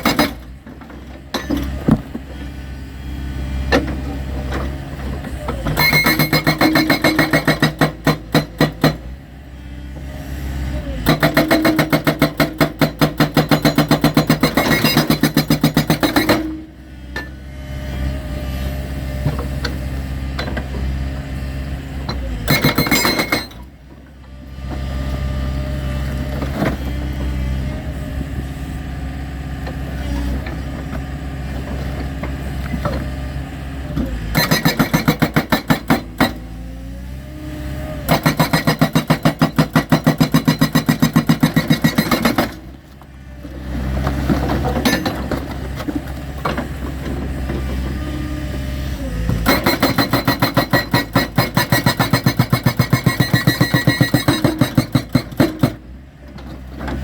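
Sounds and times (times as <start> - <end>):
hydraulic rock breaker hammering: 0.0 - 2.5, 3.7 - 9.2, 10.8 - 17.4, 22.0 - 23.9, 34.0 - 36.7, 38.0 - 42.9, 49.0 - 57.0
diesel engine running: 0.0 - 57.0.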